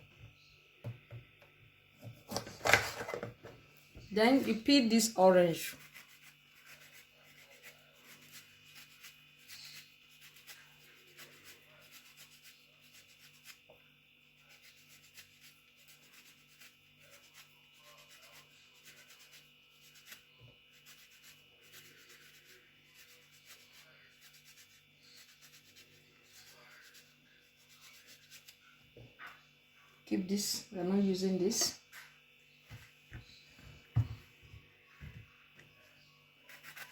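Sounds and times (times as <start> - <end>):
orange peel scraping: 36.5 - 36.9.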